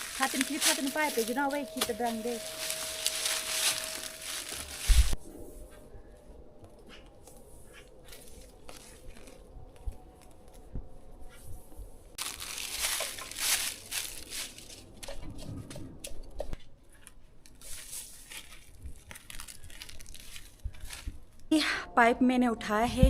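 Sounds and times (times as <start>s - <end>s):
garden hose rustling and crunching: 0.0s - 5.2s, 7.0s - 10.7s, 12.1s - 15.8s, 16.5s - 21.5s.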